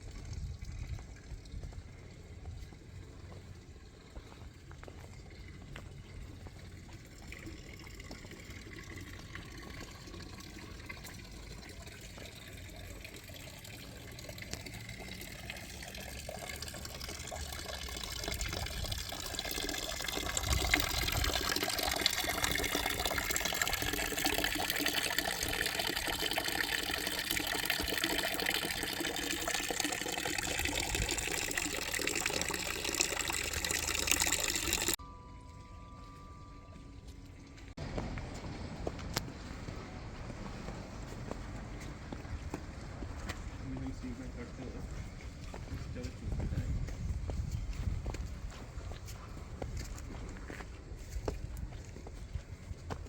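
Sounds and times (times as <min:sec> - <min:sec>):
running splashing water: 0:00.0 - 0:35.0.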